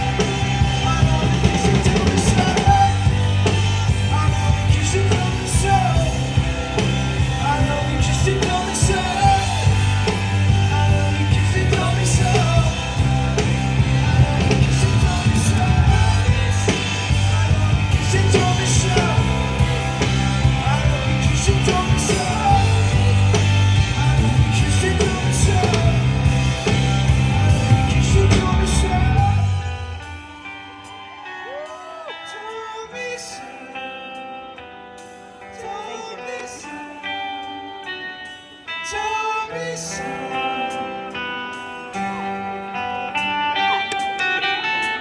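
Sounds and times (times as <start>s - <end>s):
live rock band playing: 0.0s - 45.0s.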